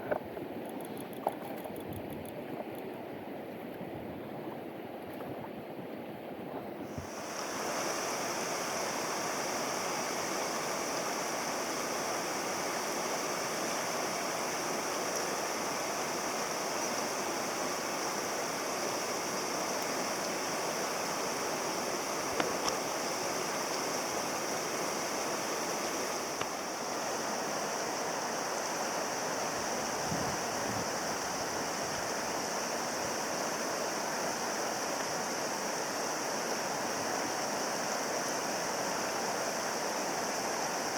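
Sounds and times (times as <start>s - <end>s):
faint clicks: 0.0s - 3.0s
mountain stream rushing: 1.6s - 40.9s.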